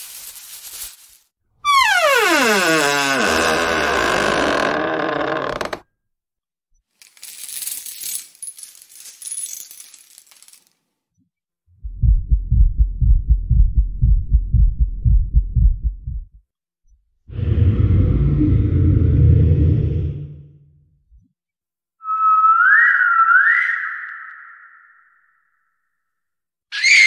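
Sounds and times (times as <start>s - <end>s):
deep low thuds: 11.8s - 16.4s.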